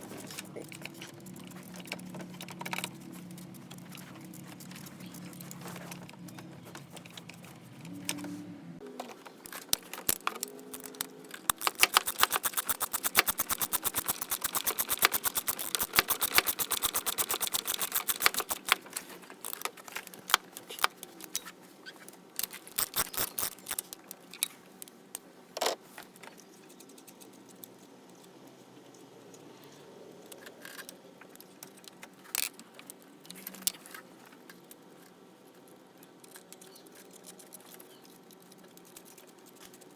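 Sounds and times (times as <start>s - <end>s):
ratchet wrench clicking: 9.7s - 18.8s, 19.4s - 21.5s, 22.4s - 24.2s.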